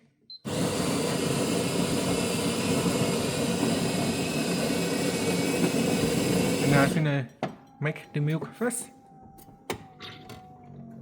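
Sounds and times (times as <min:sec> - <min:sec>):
coffee machine whirring: 0:00.5 - 0:07.1.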